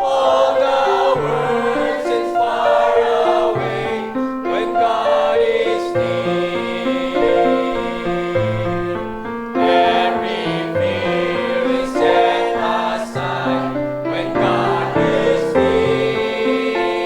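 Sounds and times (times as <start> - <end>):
choir singing a hymn: 0.0 - 17.0.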